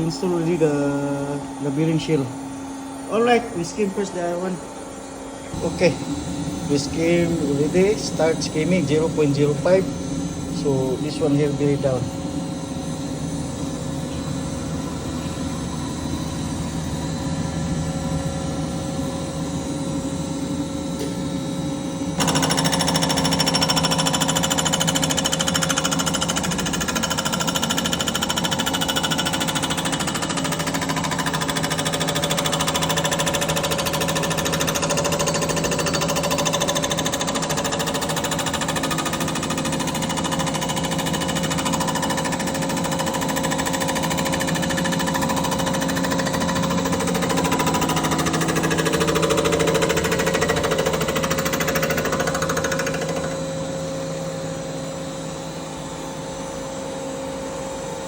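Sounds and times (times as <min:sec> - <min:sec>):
machine tool chattering cut: 0:22.2 - 0:53.4.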